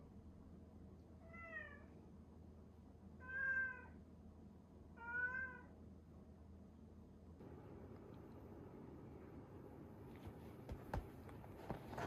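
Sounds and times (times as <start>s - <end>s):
cat meowing: 3.2s - 4.0s, 5.0s - 5.7s.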